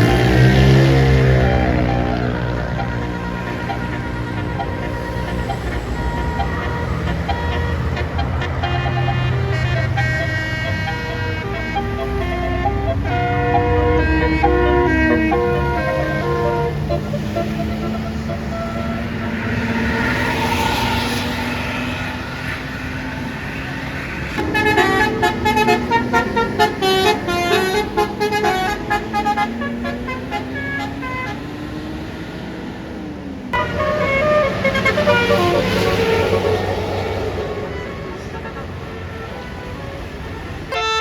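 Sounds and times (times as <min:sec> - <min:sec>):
bus air horn melodies: 0:00.0 - 0:22.4, 0:24.3 - 0:31.9, 0:33.5 - 0:41.0
engine and traffic noise: 0:00.0 - 0:41.0.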